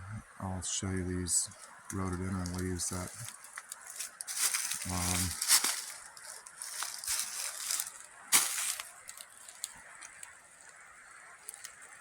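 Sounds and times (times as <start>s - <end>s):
sharp crunch of leaves: 1.9s - 10.3s
frozen leaves rustling: 1.9s - 12.0s.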